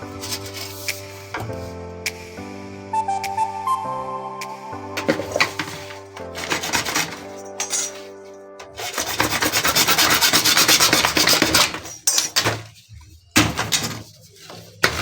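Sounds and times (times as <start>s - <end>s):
soft background music: 0.0s - 15.0s
rasping strokes on plastic pipe: 8.7s - 11.8s.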